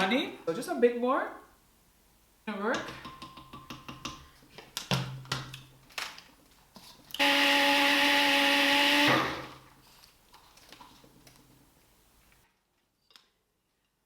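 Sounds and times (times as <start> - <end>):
blender running: 7.2 - 9.7.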